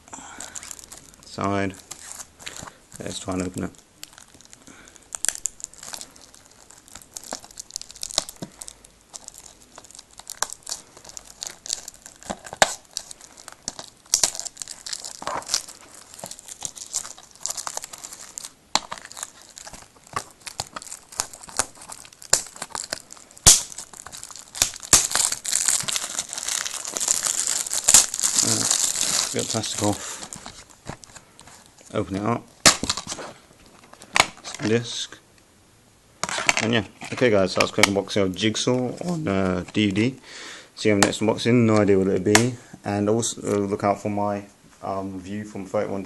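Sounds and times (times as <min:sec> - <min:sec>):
shrink-wrap crinkling: 0:00.1 - 0:34.8.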